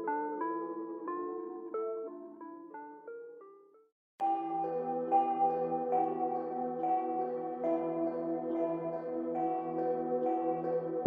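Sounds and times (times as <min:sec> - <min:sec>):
soft bell-like notes: 0:04.2 - 0:11.0.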